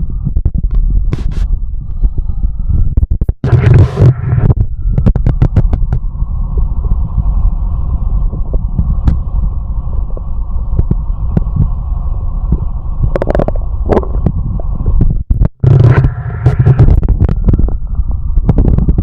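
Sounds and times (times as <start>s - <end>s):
heartbeat sounds: 0.0s - 7.3s, 8.2s - 11.8s, 12.5s - 19.0s
low stomach rumble: 0.0s - 19.0s.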